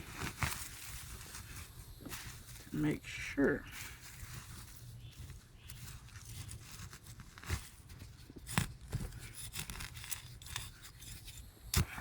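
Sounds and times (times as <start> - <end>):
soil scraping and rustling: 0.0 - 12.0.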